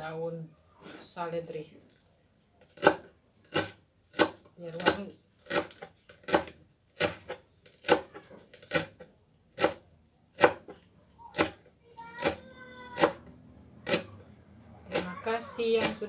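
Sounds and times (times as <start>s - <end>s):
knife chopping on cutting board: 2.8s - 9.0s, 9.6s - 11.6s, 13.0s - 14.2s.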